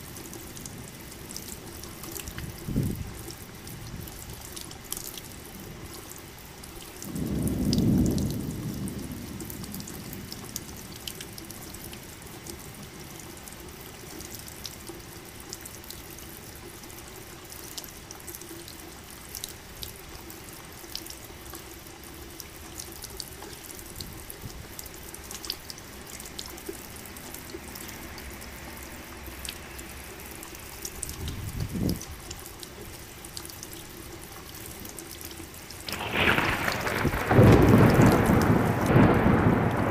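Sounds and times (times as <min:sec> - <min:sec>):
steady rain: 0:00.0 - 0:39.9
water drips: 0:00.0 - 0:39.9
thunder rumble: 0:07.1 - 0:10.5, 0:35.9 - 0:39.9.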